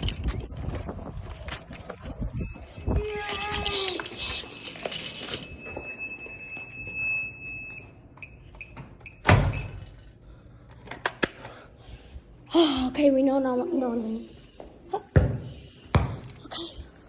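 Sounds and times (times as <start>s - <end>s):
alarm keypad steady high beep: 5.5s - 9.7s.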